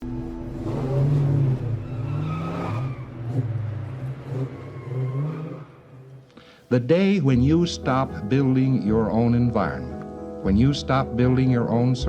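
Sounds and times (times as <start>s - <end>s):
car engine running: 0.0s - 6.0s.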